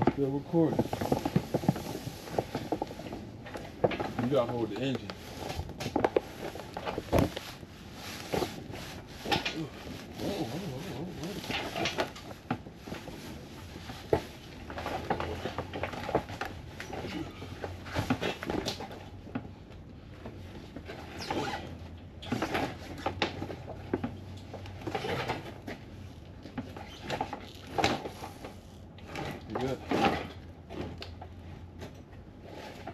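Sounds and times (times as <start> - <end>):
engine knocks clanks and scrapes: 0.0 - 7.6, 20.2 - 32.9.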